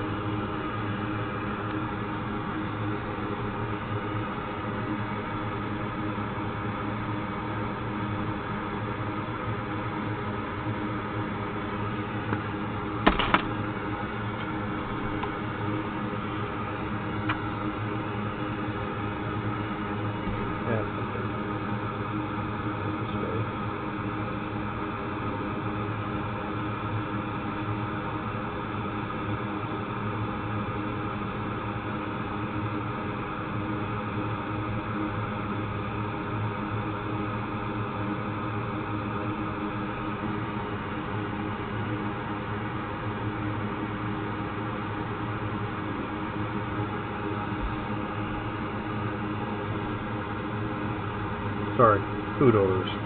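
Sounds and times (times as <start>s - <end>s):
electric fan humming: 0.0s - 24.2s, 35.4s - 53.0s.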